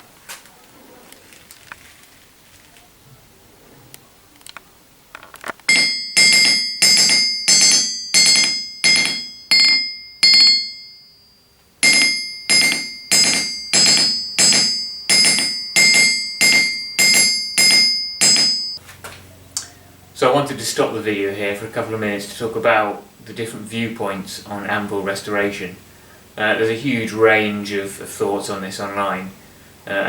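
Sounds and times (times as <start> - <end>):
hammer ringing on anvil: 5.7 - 18.8.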